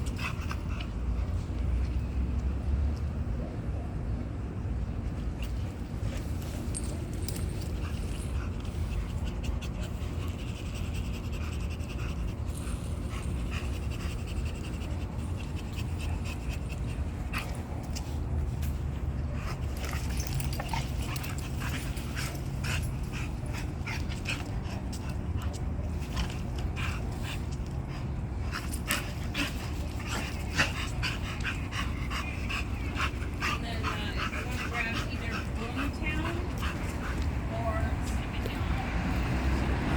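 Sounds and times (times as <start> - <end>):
dogs panting: 0.0 - 2.3, 4.9 - 39.9.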